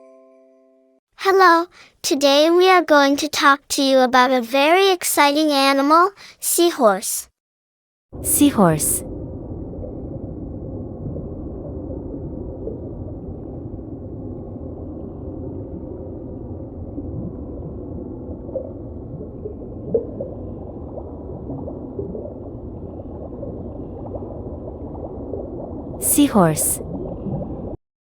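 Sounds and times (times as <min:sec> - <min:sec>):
underwater rumble: 0:08.2 - 0:27.8
bubbly chirps: 0:09.2 - 0:27.8.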